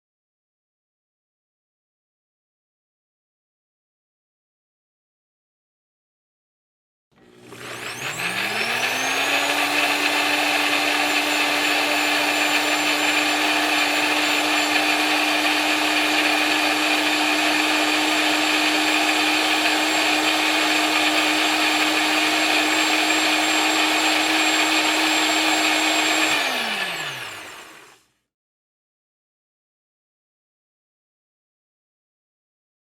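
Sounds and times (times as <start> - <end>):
blender motor whirring: 7.1 - 28.2.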